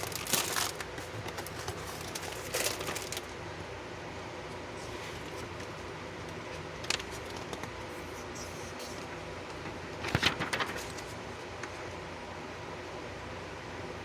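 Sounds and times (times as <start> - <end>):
plastic box rustling: 0.0 - 3.3
steady faint hum: 0.0 - 14.0.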